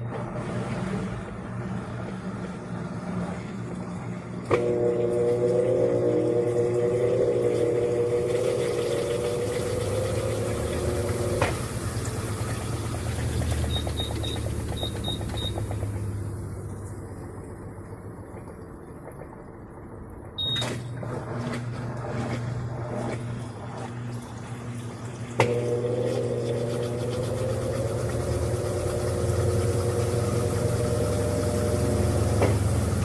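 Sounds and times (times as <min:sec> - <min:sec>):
washing machine running: 0:00.0 - 0:33.0
motor whine rising in pitch: 0:04.5 - 0:16.1, 0:25.4 - 0:33.0
short high beeps: 0:20.4 - 0:20.7.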